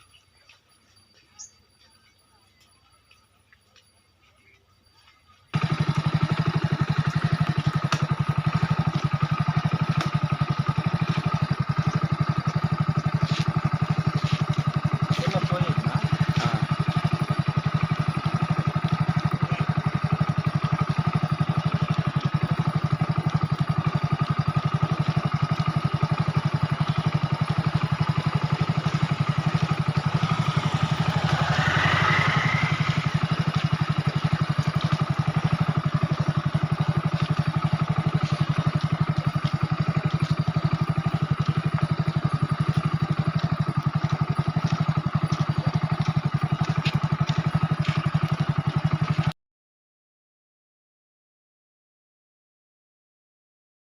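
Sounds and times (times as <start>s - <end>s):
small engine running: 0.0s - 49.4s.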